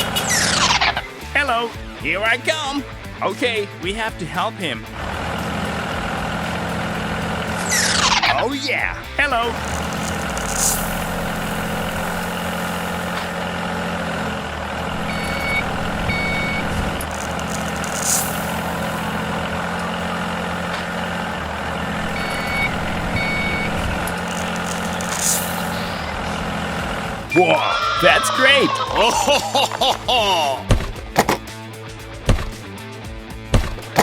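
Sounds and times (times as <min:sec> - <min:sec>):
heavy vehicle engine running: 0:00.0 - 0:01.4, 0:04.6 - 0:27.6
air hisses: 0:09.6 - 0:13.6
reversing alarm beeps: 0:14.9 - 0:17.1, 0:22.0 - 0:24.9, 0:27.3 - 0:28.0.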